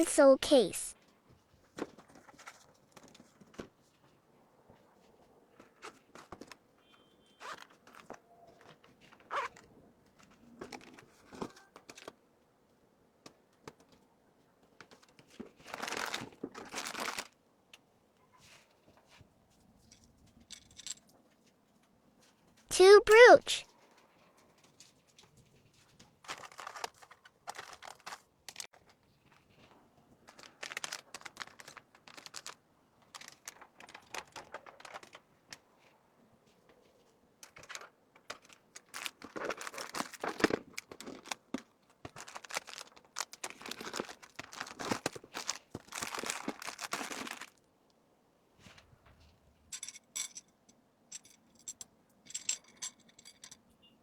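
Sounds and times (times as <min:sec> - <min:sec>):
plastic packaging crinkling: 0:15.6 - 0:17.4, 0:26.2 - 0:28.9, 0:30.2 - 0:35.2, 0:37.5 - 0:47.6
light metallic jingles: 0:49.8 - 0:53.9.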